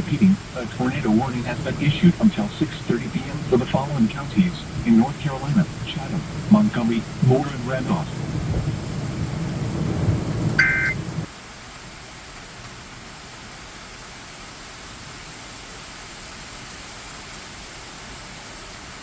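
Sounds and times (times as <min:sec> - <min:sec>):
low rumble: 0:00.0 - 0:11.3
rain hiss: 0:00.0 - 0:19.0
two-tone electronic data burst: 0:10.6 - 0:11.0.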